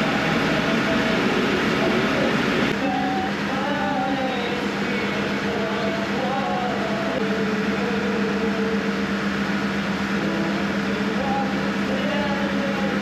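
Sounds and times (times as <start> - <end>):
engine drone: 0.0 - 13.0.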